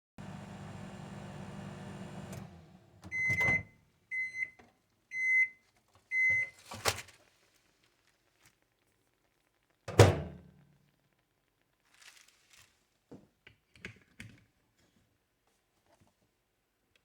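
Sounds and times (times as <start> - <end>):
microwave oven humming: 0.2 - 3.7.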